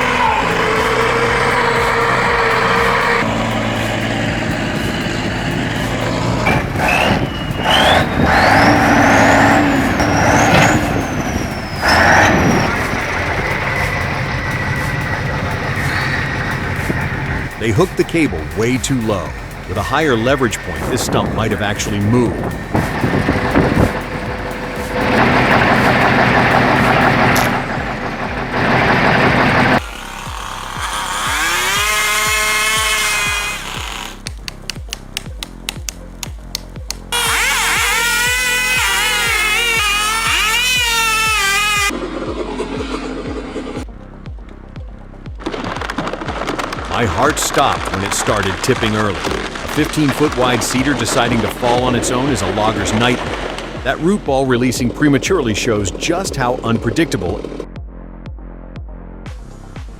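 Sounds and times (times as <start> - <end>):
diesel engine running under load: 0.0 - 34.3, 47.4 - 57.7
high rising whine: 0.0 - 34.7, 37.1 - 45.4.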